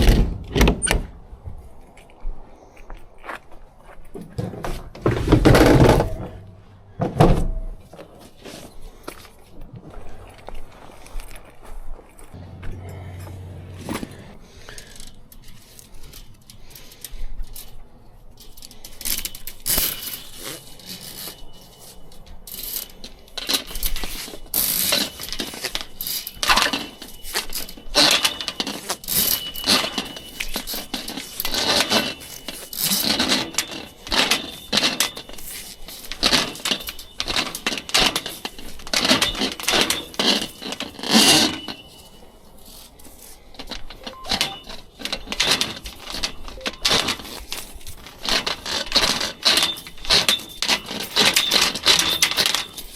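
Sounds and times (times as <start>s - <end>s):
metallic clinks and rattles: 18.4s - 42.9s, 43.6s - 52.9s.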